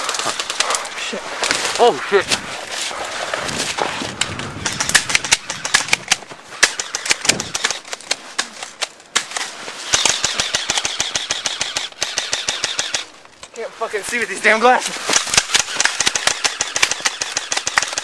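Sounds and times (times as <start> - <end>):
airsoft guns firing: 4.6 - 13.1, 15.1 - 18.0.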